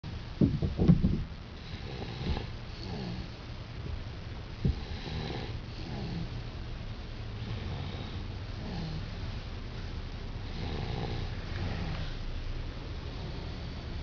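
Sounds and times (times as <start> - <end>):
car low rumble: 0.1 - 1.5
people snoring: 1.6 - 3.4, 4.6 - 6.4, 7.4 - 9.1, 10.4 - 12.2.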